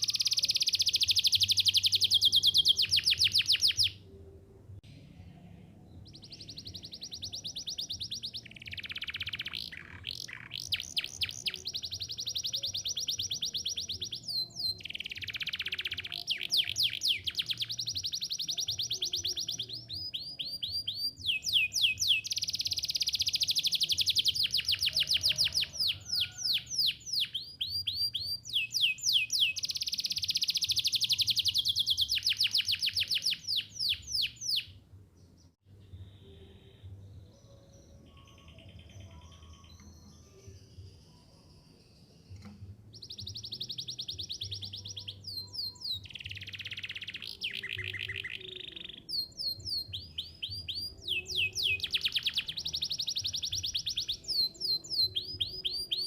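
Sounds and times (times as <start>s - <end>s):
canary singing: 0.0s - 4.2s, 5.9s - 56.0s.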